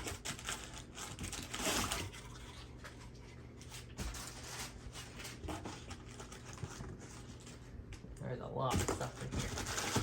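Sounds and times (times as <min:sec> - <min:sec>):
packing paper rustling: 0:00.0 - 0:02.4, 0:03.6 - 0:07.8, 0:08.7 - 0:10.0.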